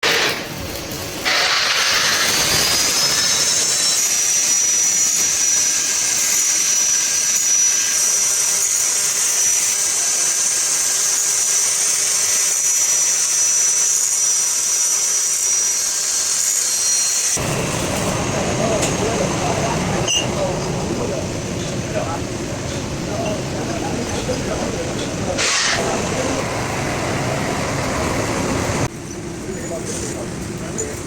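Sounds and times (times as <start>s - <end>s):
power tool motor whine: 0.0s - 19.2s, 25.4s - 28.9s.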